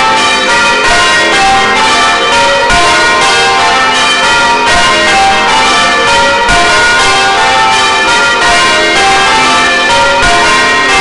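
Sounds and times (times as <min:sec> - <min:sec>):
church bells ringing: 0:00.0 - 0:11.0.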